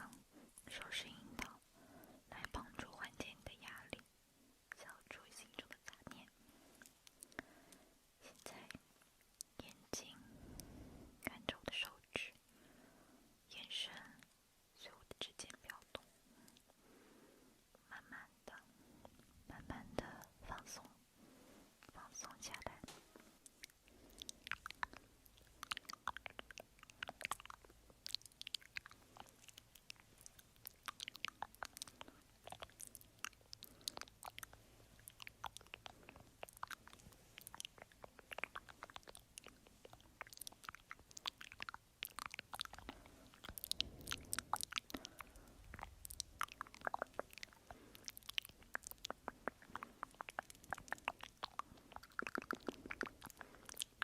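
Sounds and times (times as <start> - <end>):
wet mouth clicks and smacks: 21.8 - 54.0.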